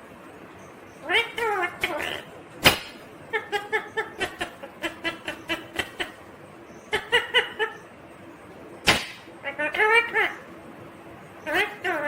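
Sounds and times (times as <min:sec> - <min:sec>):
parrot chuckling: 0:03.2 - 0:06.3, 0:06.9 - 0:07.9.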